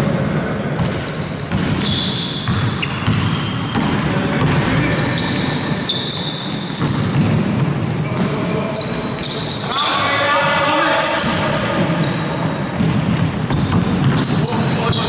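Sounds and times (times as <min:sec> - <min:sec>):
basketball bouncing on floor: 0:00.8 - 0:04.7, 0:12.8 - 0:14.4
shoe squeaks: 0:01.8 - 0:04.1, 0:04.8 - 0:10.2, 0:10.9 - 0:12.4, 0:13.5 - 0:15.0.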